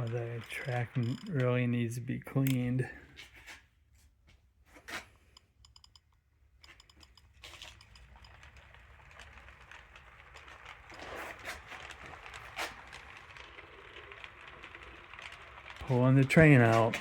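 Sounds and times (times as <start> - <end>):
model train whirring: 0.0 - 2.8, 6.6 - 17.0
model train clicking on track: 0.0 - 3.6, 5.6 - 17.0.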